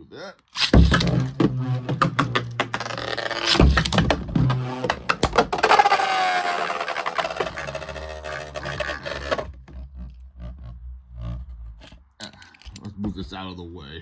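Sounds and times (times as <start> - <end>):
spinning tops clashing: 0.6 - 9.4
spinning tops whirring: 0.6 - 9.6.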